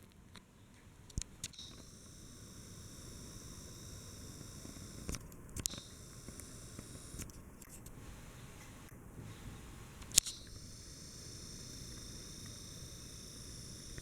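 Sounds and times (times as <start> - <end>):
ceiling fan whirring: 0.2 - 14.0
short clicks: 1.1 - 8.0, 10.0 - 14.0.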